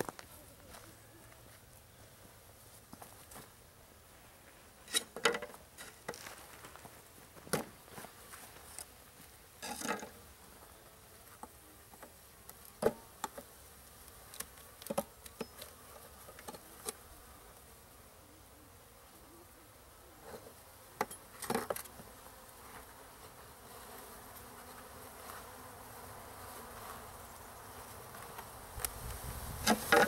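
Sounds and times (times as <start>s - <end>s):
honey bees buzzing: 7.8s - 30.0s.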